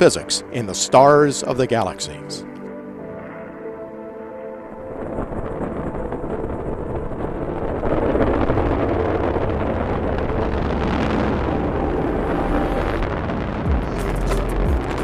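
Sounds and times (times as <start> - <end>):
rocket engines rumbling: 4.6 - 15.0.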